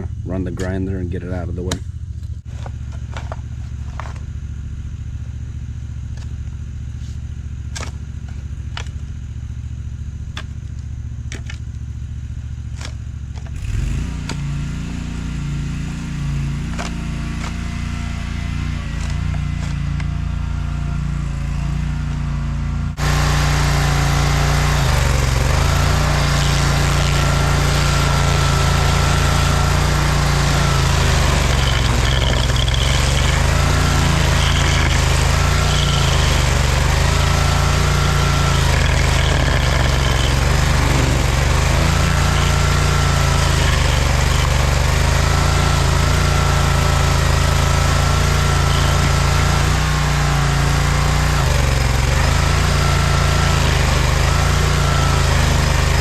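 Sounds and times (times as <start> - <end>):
stump grinder engine grinding: 12.5 - 56.0.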